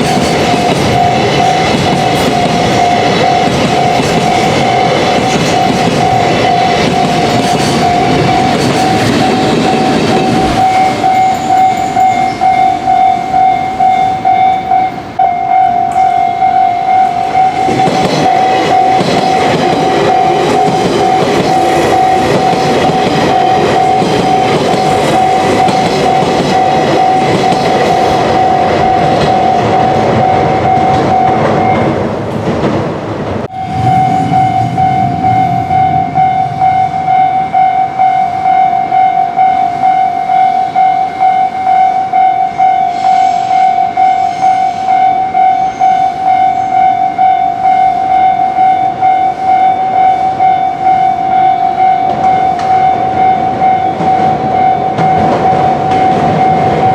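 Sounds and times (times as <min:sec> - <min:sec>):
train rumbling past: 0:00.0 - 0:56.9
level crossing bell ringing: 0:00.8 - 0:31.9, 0:33.5 - 0:56.9.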